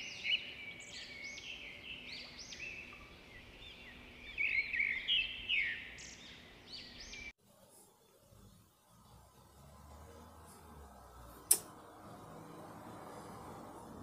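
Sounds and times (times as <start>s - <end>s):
recorded birdsong through phone speaker: 0.0s - 7.4s.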